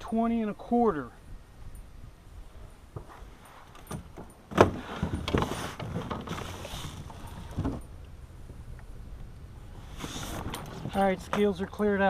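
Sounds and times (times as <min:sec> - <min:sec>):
gear rustling and clattering: 0:09.9 - 0:11.8.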